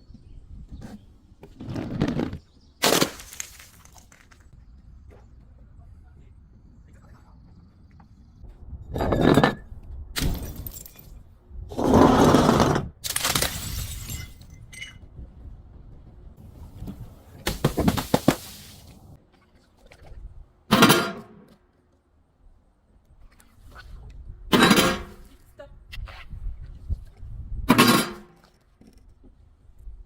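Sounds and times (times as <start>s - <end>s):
glass breaking and crunching: 2.8s - 4.2s, 13.0s - 14.6s.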